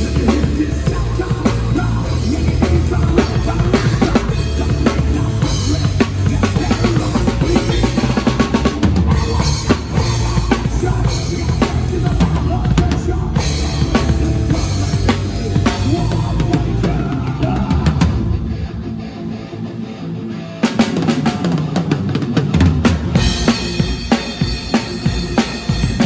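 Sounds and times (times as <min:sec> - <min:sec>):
bass drum strokes: 0:00.0 - 0:18.5
loud rock band music: 0:00.0 - 0:26.0.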